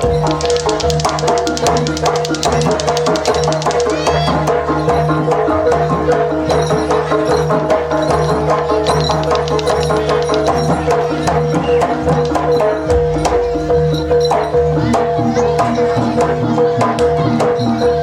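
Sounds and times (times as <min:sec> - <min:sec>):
sharp percussion clicks: 0:00.0 - 0:05.2, 0:06.4 - 0:14.5
low drum pattern: 0:00.0 - 0:17.8.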